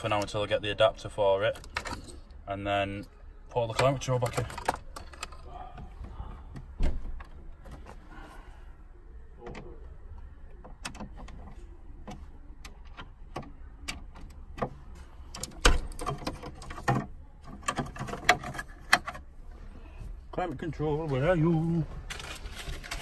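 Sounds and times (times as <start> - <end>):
car trim parts clicking and knocking: 10.5 - 19.3.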